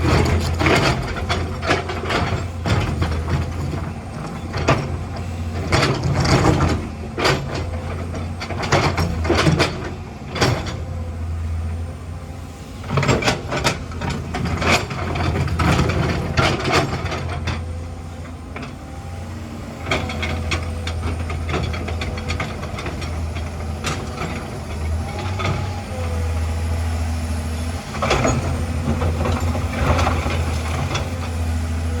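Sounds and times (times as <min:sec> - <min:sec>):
metallic clanks and rattles: 0:00.0 - 0:05.0, 0:12.9 - 0:17.8, 0:19.8 - 0:25.6
excavator engine droning: 0:00.0 - 0:32.0.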